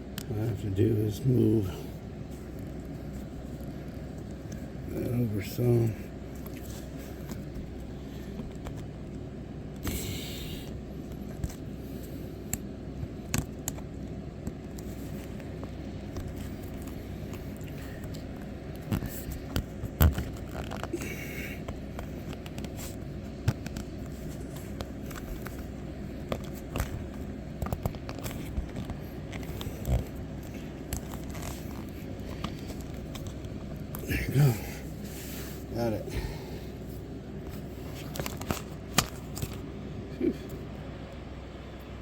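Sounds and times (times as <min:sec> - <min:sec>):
steady low hum: 0:00.0 - 0:42.0
clicks and scraping of rubber seal: 0:10.7 - 0:34.1, 0:37.4 - 0:39.7.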